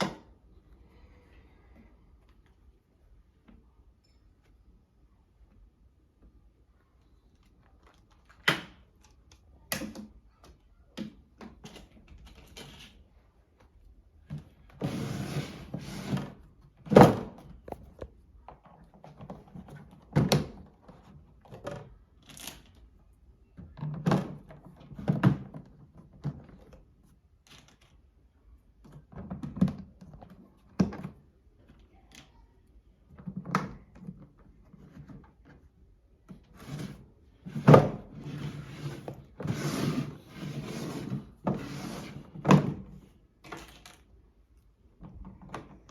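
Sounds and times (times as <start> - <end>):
plastic rustling and scraping: 34.0 - 44.1.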